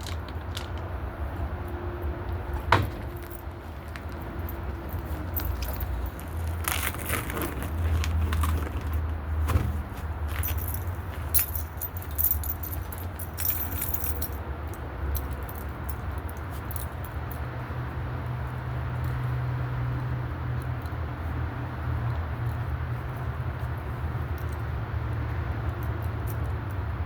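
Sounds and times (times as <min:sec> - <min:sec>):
metallic clinks and rattles: 0:02.4 - 0:09.0, 0:10.2 - 0:17.5, 0:25.7 - 0:26.8.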